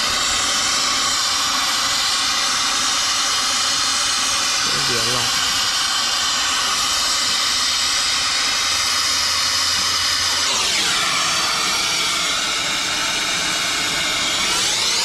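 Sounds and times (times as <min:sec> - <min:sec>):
torch flame hissing: 0:00.0 - 0:15.0.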